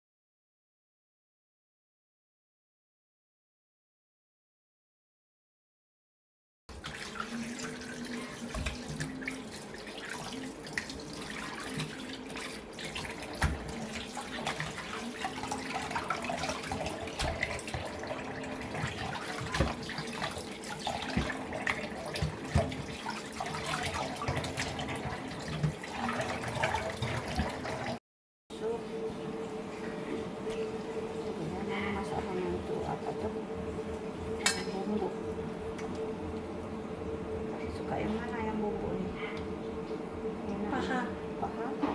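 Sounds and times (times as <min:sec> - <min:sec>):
tap water running into sink: 0:06.7 - 0:28.0
objects clattering in sink: 0:11.6 - 0:28.0.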